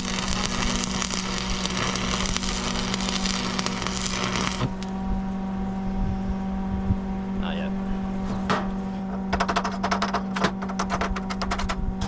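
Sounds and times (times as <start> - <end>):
welding arc crackling: 0.0 - 5.0
steady low hum: 0.0 - 12.0.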